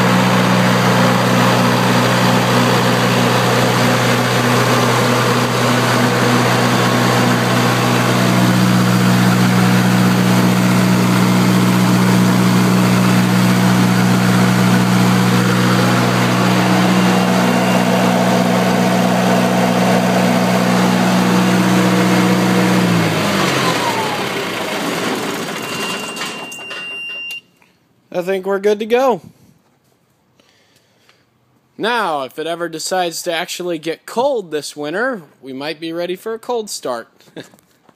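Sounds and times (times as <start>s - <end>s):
engine winding down: 0.0s - 26.5s
diesel generator running: 0.0s - 27.4s.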